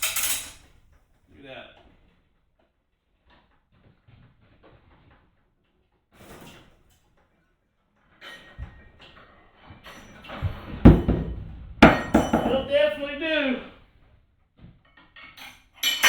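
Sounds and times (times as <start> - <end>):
metal parts rattling and scraping: 0.0 - 0.8
loud knocks: 10.4 - 12.9.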